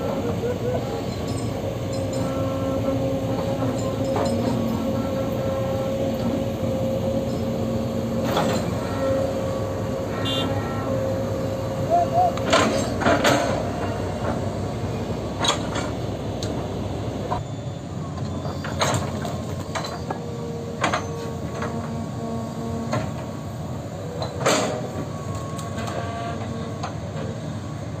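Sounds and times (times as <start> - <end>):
excavator engine drone: 0.0 - 28.0
metallic clanks and knocks: 1.0 - 5.2, 8.2 - 9.5, 12.4 - 14.5.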